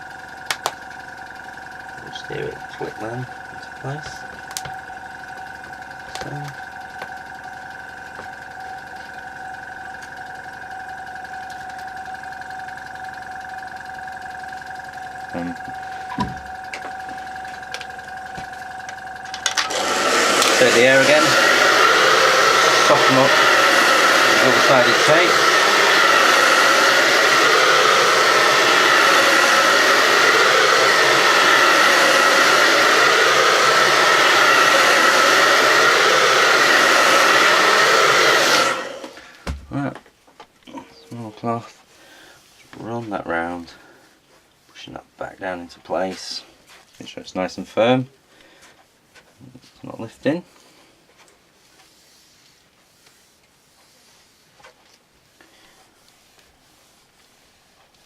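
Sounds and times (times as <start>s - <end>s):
electric machine two-tone whine: 0.0s - 44.1s.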